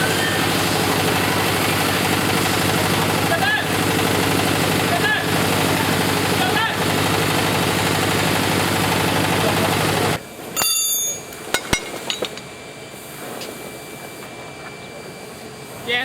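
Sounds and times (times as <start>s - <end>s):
ringing metallic clank: 10.6s - 12.5s
steel knocks: 10.6s - 12.5s.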